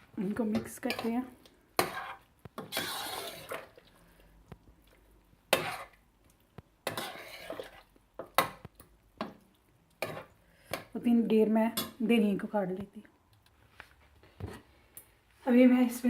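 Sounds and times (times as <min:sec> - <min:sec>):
spoon scraping a cooking pot: 0:00.4 - 0:03.9, 0:05.5 - 0:06.0, 0:06.8 - 0:10.9.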